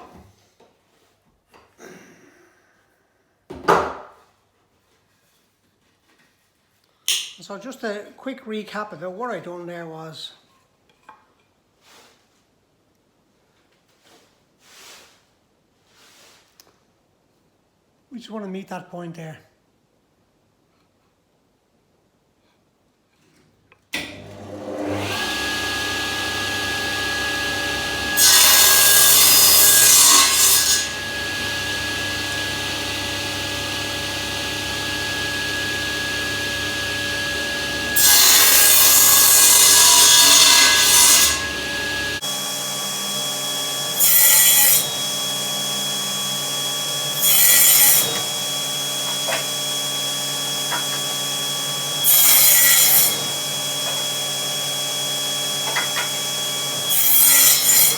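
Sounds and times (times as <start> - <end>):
power saw cutting wood: 24.0 - 57.9.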